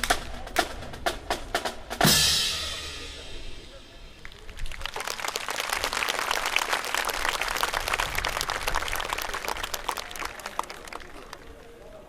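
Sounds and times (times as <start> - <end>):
audience applauding: 4.2 - 12.0.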